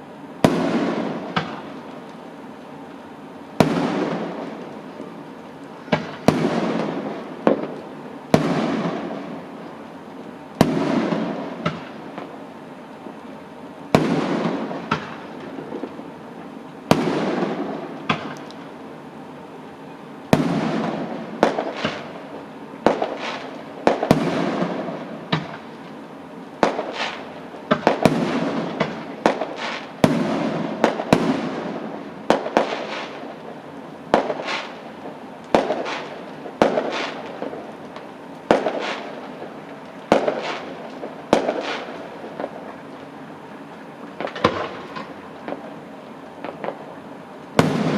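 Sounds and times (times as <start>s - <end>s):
fireworks pops and crackles: 0.0s - 18.8s, 19.9s - 47.9s
fireworks bangs: 0.4s - 1.9s, 3.6s - 4.7s, 5.8s - 9.6s, 10.6s - 12.4s, 13.9s - 16.1s, 16.9s - 18.4s, 20.3s - 25.7s, 26.6s - 33.4s, 34.1s - 42.8s, 44.1s - 45.8s, 46.4s - 47.0s, 47.6s - 47.9s.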